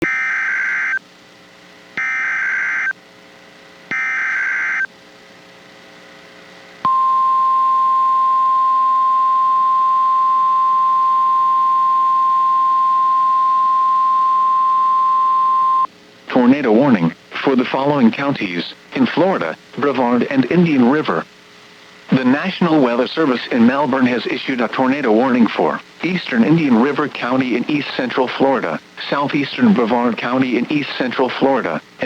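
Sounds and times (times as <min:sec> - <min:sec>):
digital data tone bursts: 0:00.0 - 0:01.0, 0:02.0 - 0:02.9, 0:03.9 - 0:04.9
steady warning alarm tone: 0:00.0 - 0:01.0, 0:02.0 - 0:03.0, 0:03.9 - 0:04.9, 0:06.9 - 0:15.9.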